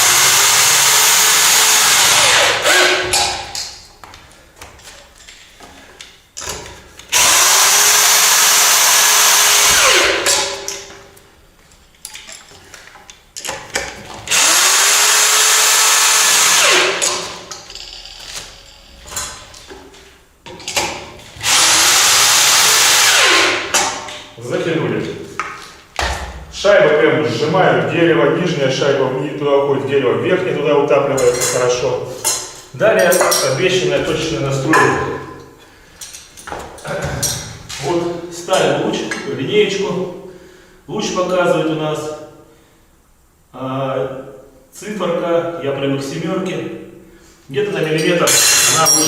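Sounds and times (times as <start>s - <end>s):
power drill tightening nuts: 48.3s - 49.0s.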